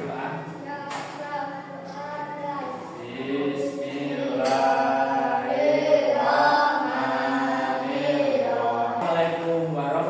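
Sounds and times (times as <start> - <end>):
children chanting in unison: 1.4 - 9.2.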